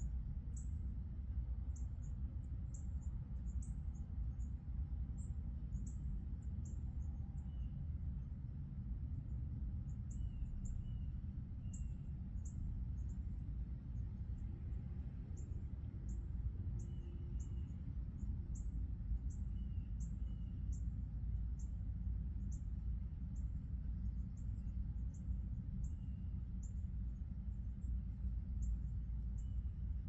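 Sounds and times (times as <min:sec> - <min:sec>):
steady low rumble: 0:00.0 - 0:30.0
faint whistled bird notes: 0:10.1 - 0:12.5, 0:16.8 - 0:17.8, 0:19.3 - 0:20.9.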